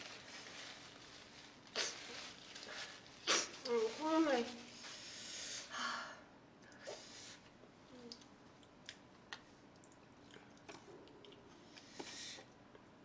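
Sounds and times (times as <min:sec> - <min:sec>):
soft chewing: 0:07.9 - 0:13.0.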